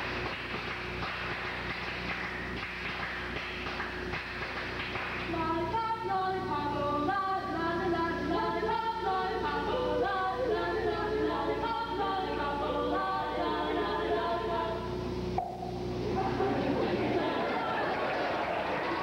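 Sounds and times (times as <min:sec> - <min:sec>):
steady low hum: 0:00.0 - 0:19.0
choir singing in harmony: 0:08.3 - 0:14.9.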